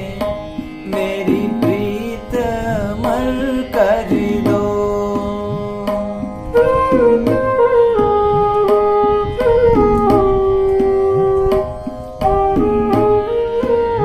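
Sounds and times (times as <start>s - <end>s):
tabla strokes: 0.0s - 14.0s
flute melody: 6.4s - 14.0s.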